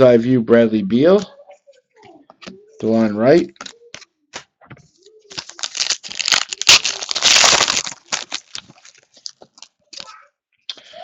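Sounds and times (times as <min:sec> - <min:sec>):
wrapper crinkling: 0:05.3 - 0:10.1.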